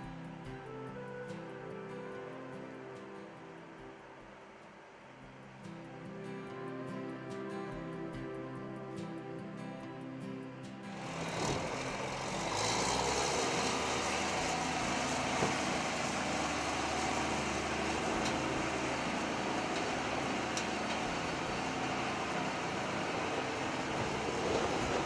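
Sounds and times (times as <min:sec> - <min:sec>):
tractor diesel engine running: 0:11.0 - 0:25.0.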